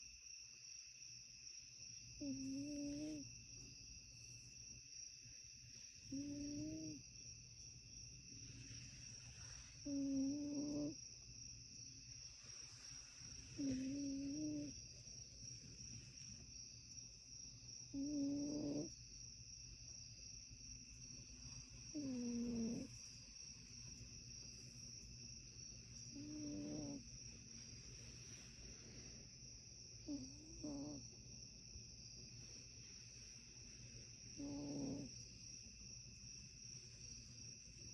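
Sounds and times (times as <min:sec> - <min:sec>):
cat snoring: 0:02.2 - 0:03.3, 0:06.1 - 0:07.0, 0:08.4 - 0:11.0, 0:12.3 - 0:14.8, 0:17.9 - 0:19.0, 0:21.8 - 0:23.0, 0:26.1 - 0:27.1, 0:30.0 - 0:31.2, 0:34.3 - 0:35.4.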